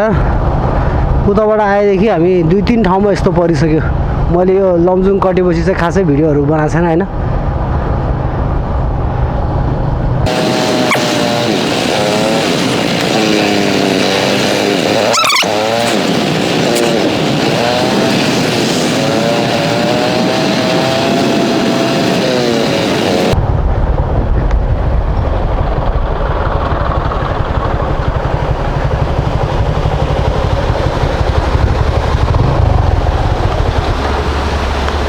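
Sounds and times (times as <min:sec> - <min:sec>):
wind noise on microphone: 0:07.1 - 0:35.0
motorcycle engine running: 0:10.0 - 0:35.0.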